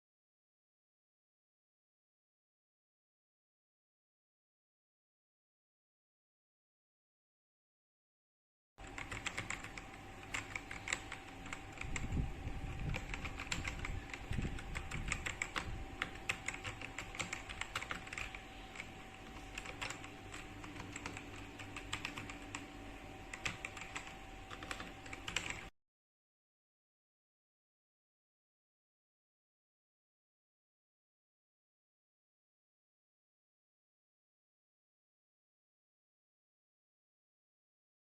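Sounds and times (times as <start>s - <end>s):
faint steady whine: 8.8s - 25.7s
mechanical keyboard key clacks: 8.9s - 22.5s, 23.3s - 25.7s.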